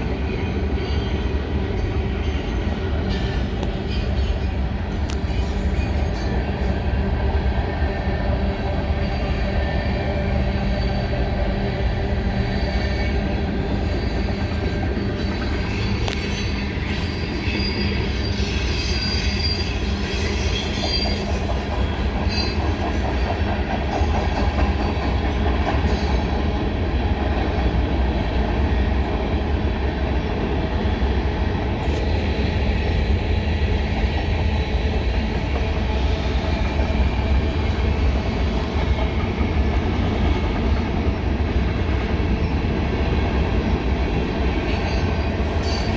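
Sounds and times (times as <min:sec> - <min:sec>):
train wheels rumbling on rail: 0:00.0 - 0:45.9
high wheel squeal: 0:12.4 - 0:22.8.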